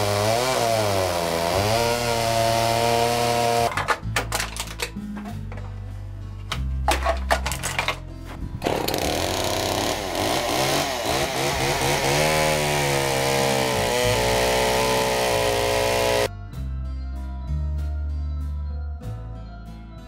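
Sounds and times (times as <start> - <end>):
chainsaw engine revving: 0.0 - 3.7, 8.6 - 16.3.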